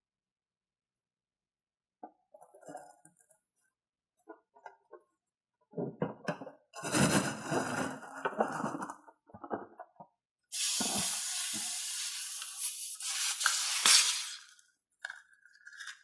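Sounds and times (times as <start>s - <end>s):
steady hiss: 10.5s - 14.5s
slime squishing and stirring: 12.6s - 16.0s.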